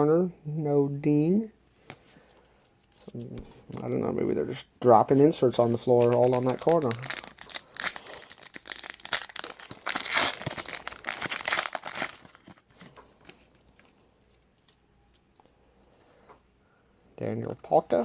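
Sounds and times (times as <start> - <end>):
plastic wrapper tearing and crinkling: 5.7 - 13.8.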